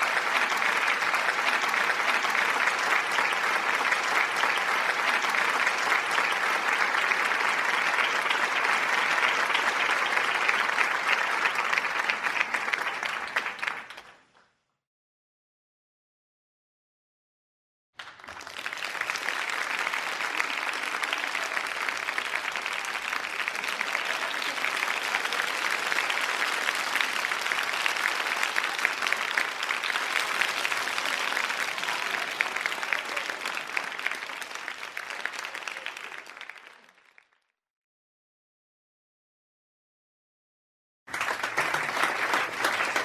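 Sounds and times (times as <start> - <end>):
crowd applauding: 0.0 - 14.4, 18.0 - 37.4, 41.1 - 43.0.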